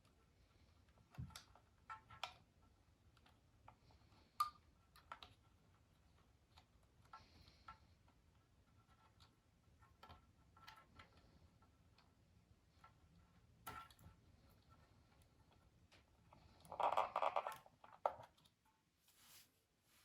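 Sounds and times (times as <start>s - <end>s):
small hard parts clicking: 15.9s - 18.5s.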